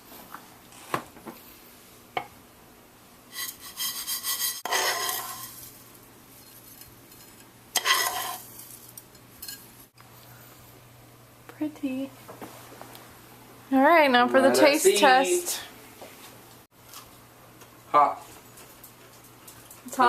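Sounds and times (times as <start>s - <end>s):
utensil scraping cookware: 3.3s - 5.8s, 6.4s - 9.7s.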